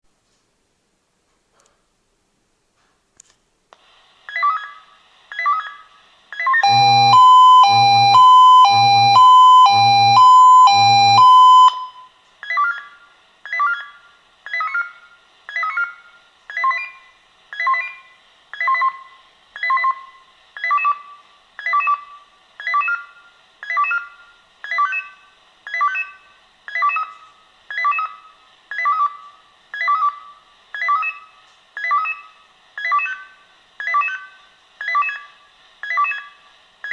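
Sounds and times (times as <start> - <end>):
pager ringing beeps: 6.6 - 12.0
pager two-tone call: 6.6 - 12.0.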